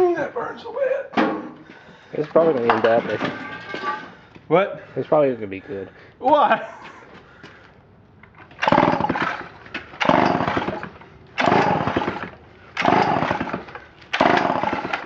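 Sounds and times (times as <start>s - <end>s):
chainsaw pull-start chugging: 8.4s - 15.0s.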